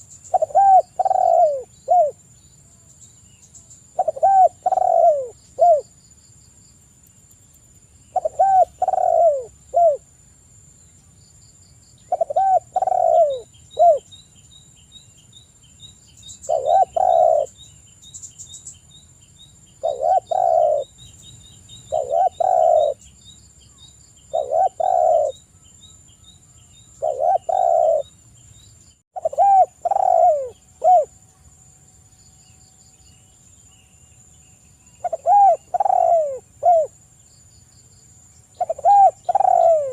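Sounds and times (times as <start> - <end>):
dove cooing: 0.3 - 2.2, 4.0 - 5.9, 8.1 - 10.0, 12.1 - 14.1, 16.5 - 17.6, 19.8 - 20.9, 21.9 - 23.0, 24.3 - 25.4, 27.0 - 28.1, 29.2 - 31.2, 35.0 - 37.0, 38.6 - 39.9.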